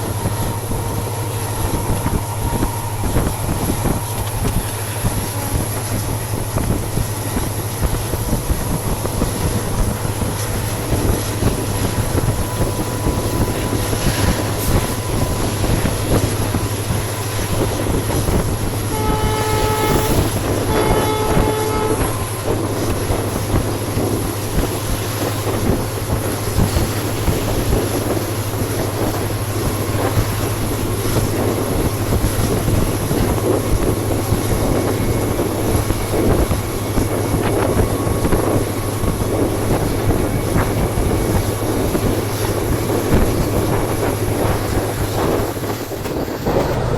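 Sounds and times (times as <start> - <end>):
train wheel and coach noise: 0.0 - 46.9
locomotive horn blasts: 9.5 - 23.4.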